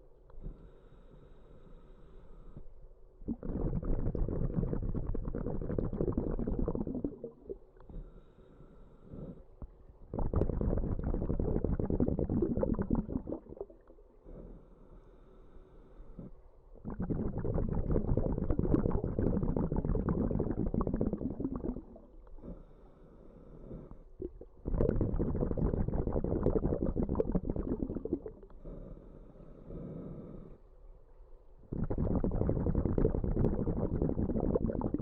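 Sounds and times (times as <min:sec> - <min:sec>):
regulator inhalations: 0:00.4 - 0:06.8, 0:07.8 - 0:09.8, 0:10.4 - 0:30.7
bubbling underwater exhalations: 0:03.2 - 0:07.7, 0:10.1 - 0:14.0, 0:16.8 - 0:22.6, 0:24.2 - 0:28.5, 0:31.7 - 0:35.0.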